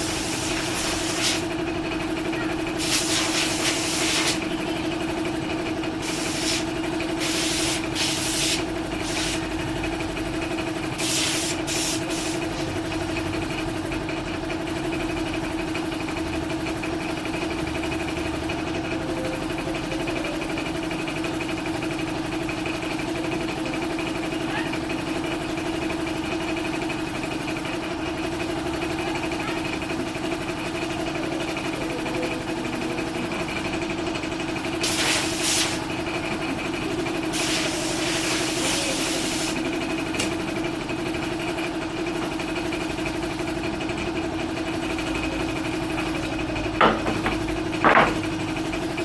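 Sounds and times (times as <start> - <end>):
steady mechanical hum: 0.0 - 49.0
hissing bursts: 2.8 - 4.4, 34.8 - 35.8.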